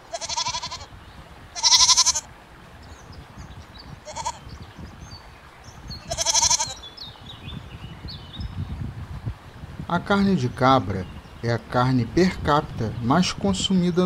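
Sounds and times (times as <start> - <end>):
goats bleating: 0.0 - 0.9, 1.6 - 2.3, 4.0 - 4.5, 6.0 - 6.8.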